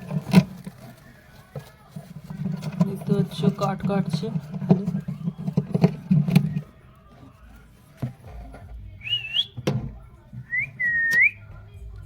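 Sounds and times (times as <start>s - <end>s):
bird chewing wood: 0.0s - 9.5s
bird whistles: 9.0s - 9.6s, 10.5s - 11.4s.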